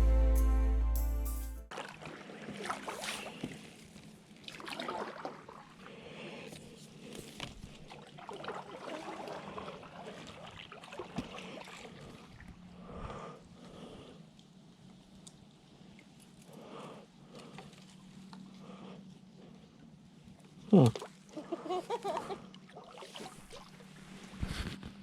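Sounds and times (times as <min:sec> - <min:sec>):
paddle splashing in water: 0:01.7 - 0:03.8, 0:04.4 - 0:05.9, 0:07.8 - 0:12.5, 0:22.1 - 0:24.0.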